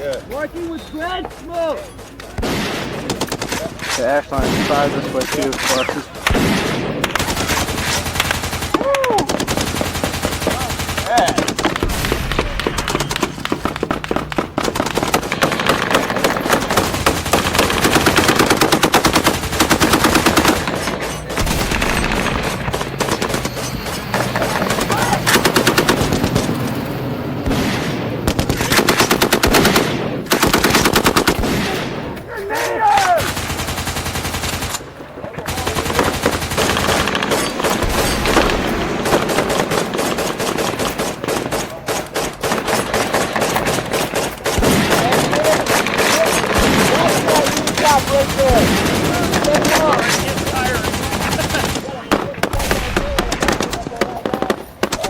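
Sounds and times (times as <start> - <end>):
toy blasters firing: 2.4 - 26.8, 35.6 - 55.0.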